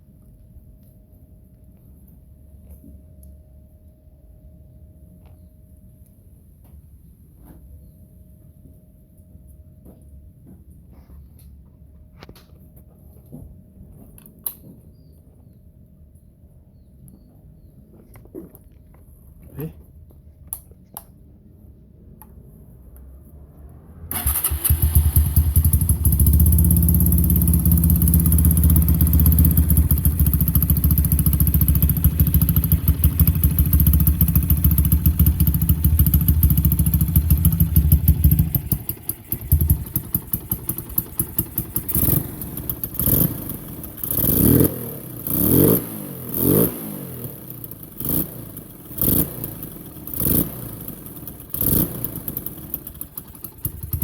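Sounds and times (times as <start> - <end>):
motorcycle engine revving: 23.9 - 54.0
motorcycle engine idling: 24.1 - 46.1, 46.8 - 54.0.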